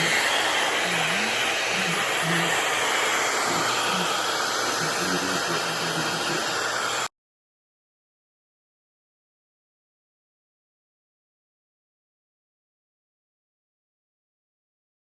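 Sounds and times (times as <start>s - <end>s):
hair dryer blowing: 0.0s - 7.1s.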